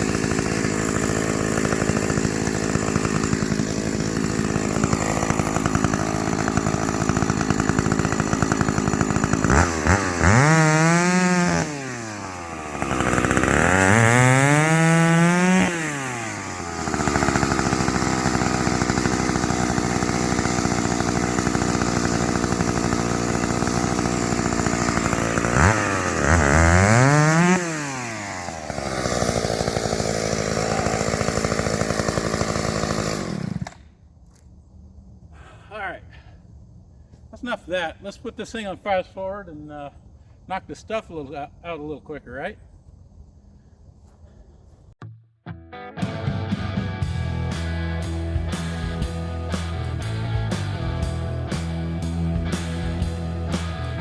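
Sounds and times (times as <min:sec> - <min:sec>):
chainsaw revving: 0:00.0 - 0:33.9, 0:50.6 - 0:54.0.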